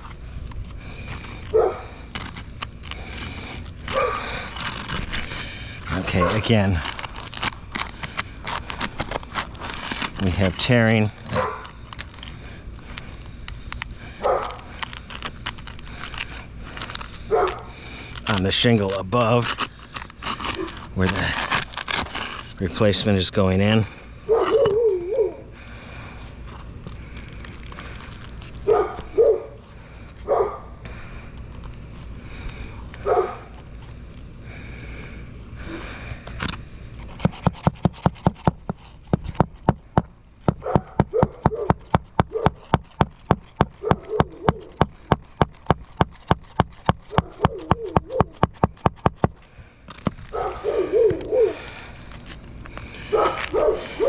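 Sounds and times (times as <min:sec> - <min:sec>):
dog barking and whining: 0:01.5 - 0:01.9, 0:03.9 - 0:04.3, 0:11.3 - 0:11.7, 0:14.2 - 0:14.7, 0:17.3 - 0:17.7, 0:24.3 - 0:25.5, 0:28.6 - 0:29.6, 0:30.3 - 0:30.7, 0:33.0 - 0:33.5, 0:40.6 - 0:42.6, 0:43.8 - 0:44.8, 0:47.1 - 0:48.4, 0:50.3 - 0:51.6, 0:53.1 - 0:54.0
hammer striking nails: 0:37.2 - 0:49.3.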